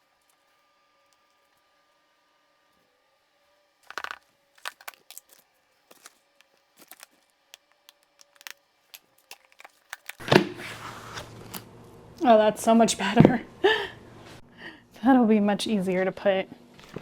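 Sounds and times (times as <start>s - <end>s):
packaging crackles and clicks: 3.8s - 10.3s.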